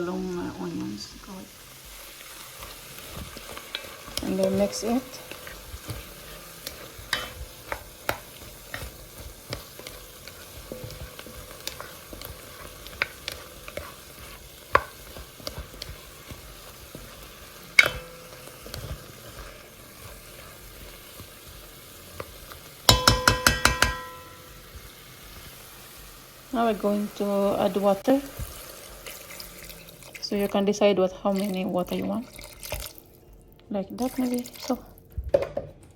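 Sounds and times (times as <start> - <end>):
food sizzling in a pan: 0.0 - 35.0
utensil scraping a pan: 2.0 - 21.6
ringing metal taps on pan: 22.9 - 24.5.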